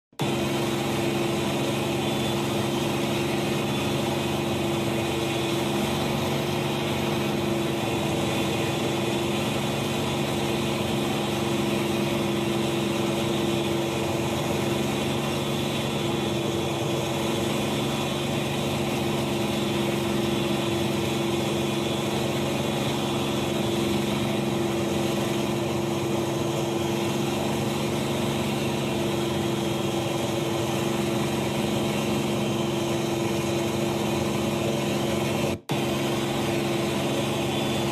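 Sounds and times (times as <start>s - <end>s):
engine-like drone: 0.1s - 37.9s.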